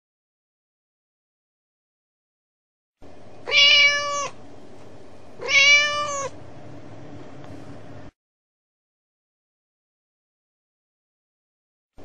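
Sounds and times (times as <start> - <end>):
cat meowing: 3.4 - 4.4, 5.4 - 6.4.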